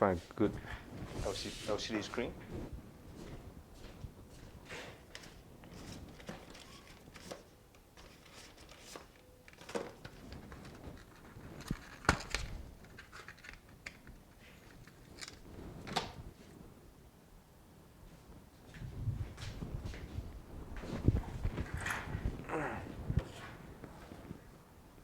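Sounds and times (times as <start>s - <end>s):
small parts clicking and rustling: 5.1s - 16.2s.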